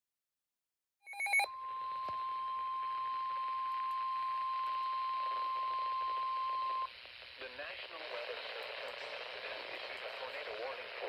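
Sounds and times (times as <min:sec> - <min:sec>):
digital data chirps: 0:01.1 - 0:06.9
steady high alarm tone: 0:01.1 - 0:06.9.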